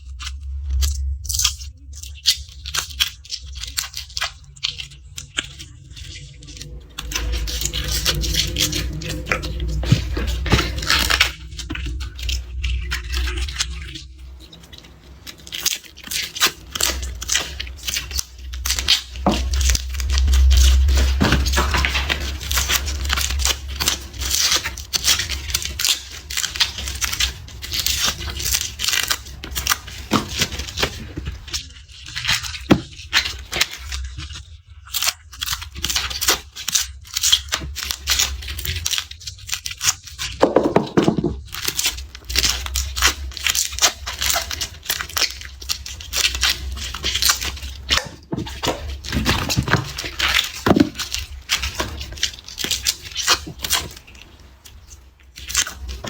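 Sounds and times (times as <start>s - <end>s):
low rumble: 0.0s - 32.2s
garlic skins crackling: 0.1s - 56.0s.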